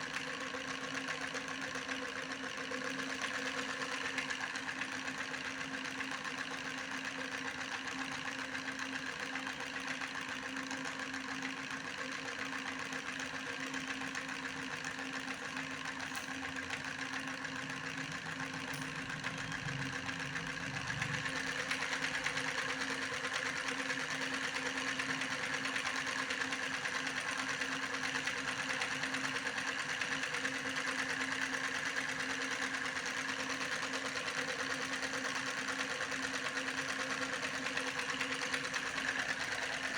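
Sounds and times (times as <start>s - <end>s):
small motor humming: 0.0s - 39.9s.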